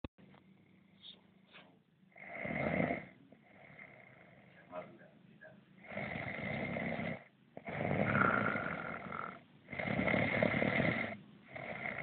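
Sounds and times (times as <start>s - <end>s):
person snoring: 2.2s - 4.6s, 5.8s - 12.0s.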